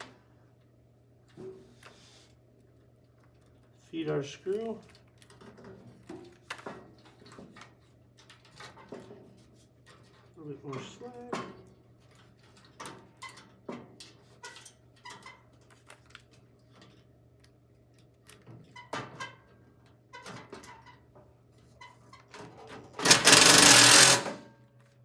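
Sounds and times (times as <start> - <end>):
loud harsh burst of noise: 23.0 - 24.4.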